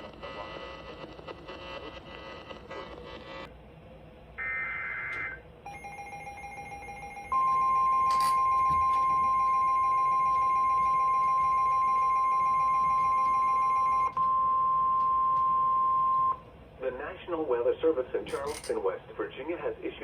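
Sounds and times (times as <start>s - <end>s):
loud warning alarm tone: 4.4s - 14.2s.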